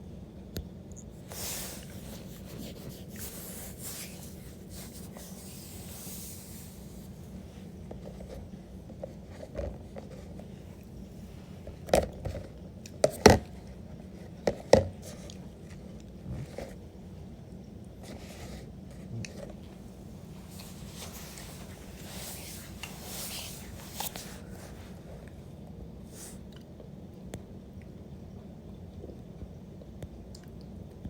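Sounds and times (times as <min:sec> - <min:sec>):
faint scraping and rubbing: 0:01.2 - 0:11.8, 0:19.3 - 0:25.5, 0:26.1 - 0:26.4.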